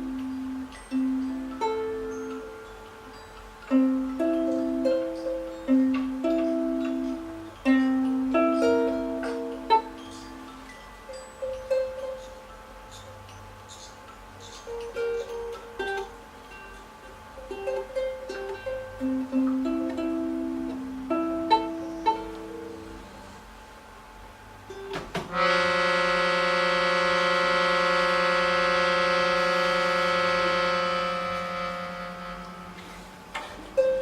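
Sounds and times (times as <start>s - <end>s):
free-reed instrument chord: 0.0s - 12.8s, 24.6s - 33.1s
plucked and struck notes: 0.0s - 23.4s, 24.6s - 34.0s.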